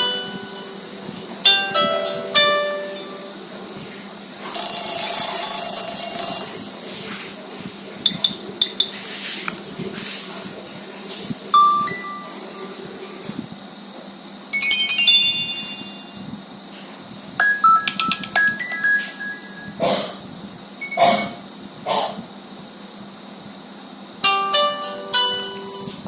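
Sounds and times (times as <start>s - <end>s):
plucked notes: 0.0s - 3.5s, 24.2s - 26.0s
bright chime: 14.6s - 16.2s.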